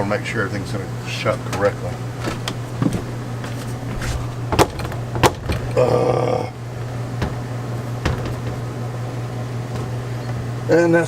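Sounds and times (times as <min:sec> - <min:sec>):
screen door knocking and clicking: 0:01.6 - 0:09.2.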